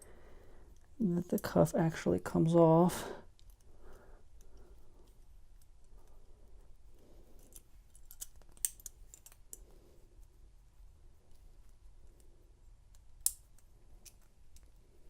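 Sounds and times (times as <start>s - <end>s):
lock pick clicking and scraping: 7.4s - 9.6s.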